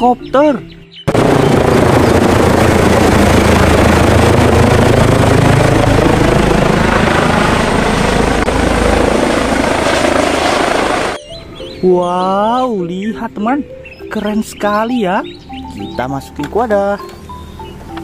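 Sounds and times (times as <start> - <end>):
helicopter rotor and engine: 1.1 - 11.2.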